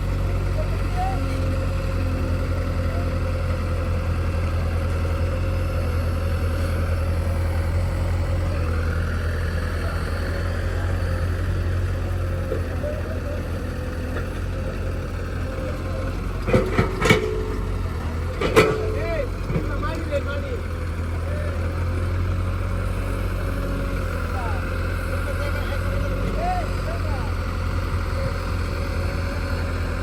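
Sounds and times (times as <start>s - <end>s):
heavy diesel engine running: 0.0s - 30.0s.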